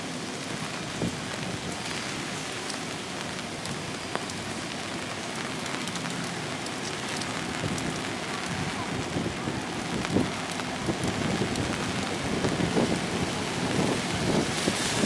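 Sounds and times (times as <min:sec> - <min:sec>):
steady rain hiss: 0:00.0 - 0:15.0.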